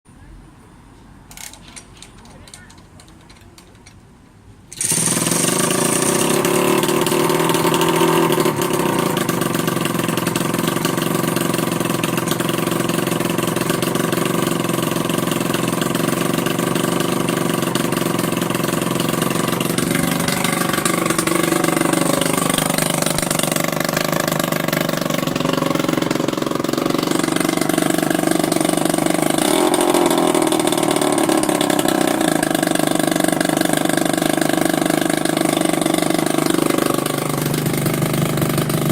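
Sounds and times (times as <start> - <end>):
scooter engine revving: 4.7 - 38.9.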